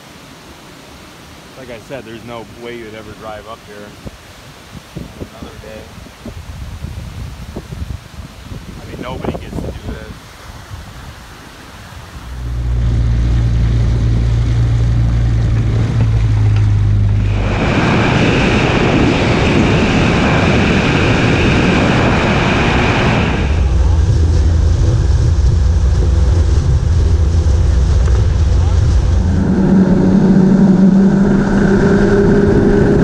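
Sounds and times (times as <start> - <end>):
rushing water and wind: 0.0 - 33.0
boat engine humming: 11.6 - 33.0.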